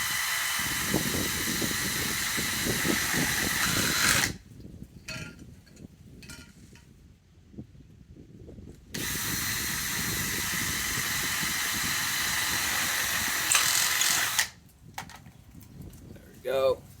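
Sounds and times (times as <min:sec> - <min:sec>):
power drill boring through lid: 0:00.0 - 0:04.4, 0:09.0 - 0:14.5.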